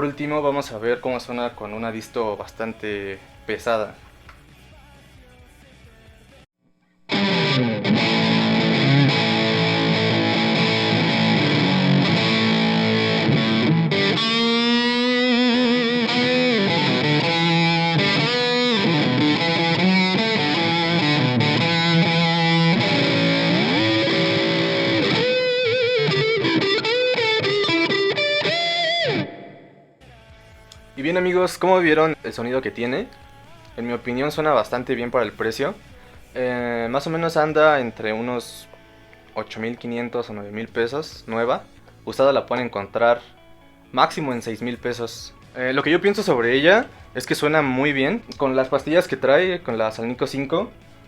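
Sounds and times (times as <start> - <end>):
distorted electric guitar: 7.1 - 31.1.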